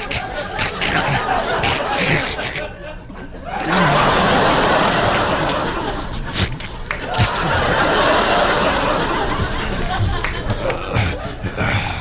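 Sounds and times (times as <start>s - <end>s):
man making vocal sound effects: 0.0s - 2.7s, 10.5s - 12.0s
audience laughter: 0.0s - 11.5s.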